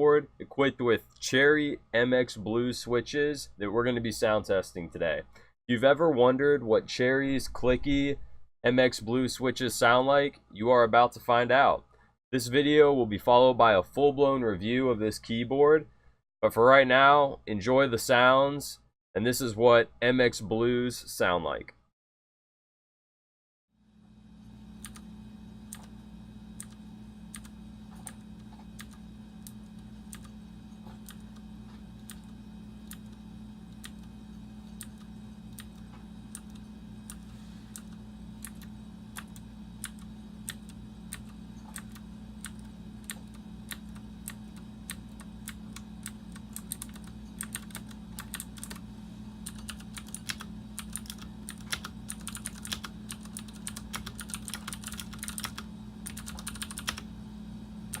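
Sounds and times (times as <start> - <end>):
steady low hum: 0.0 - 16.0, 23.8 - 58.0
mechanical keyboard typing: 26.6 - 28.2, 28.8 - 30.3, 30.9 - 31.4, 34.8 - 37.2, 37.8 - 48.8, 49.4 - 57.0.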